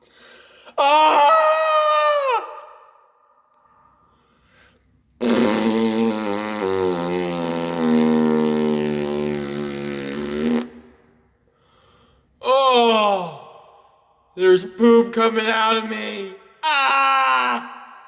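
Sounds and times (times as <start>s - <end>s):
long buzzing fart noise: 5.2s - 11.2s.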